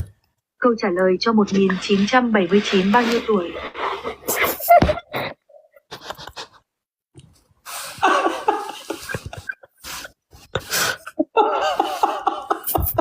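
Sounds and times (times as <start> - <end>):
person gasping breaths: 8.8 - 12.2.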